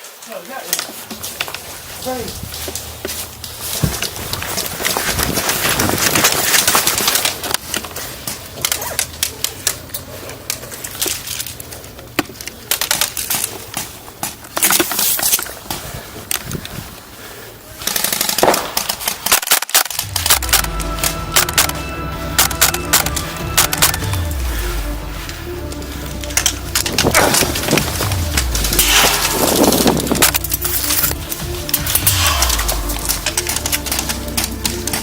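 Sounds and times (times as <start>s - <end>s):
airsoft guns firing: 17.8s - 21.8s, 22.4s - 24.2s, 27.1s - 31.0s, 31.7s - 35.0s.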